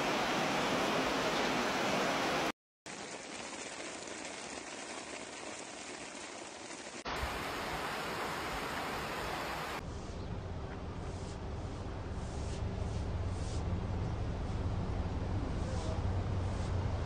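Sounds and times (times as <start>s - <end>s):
floodwater rushing: 0.0s - 9.8s
rain: 0.0s - 9.8s.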